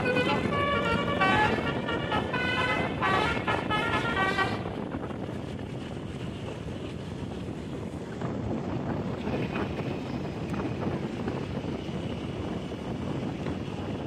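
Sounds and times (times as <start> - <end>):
bus multi-tone horn melody: 0.0 - 4.9
engine road and wind noise: 0.0 - 14.0.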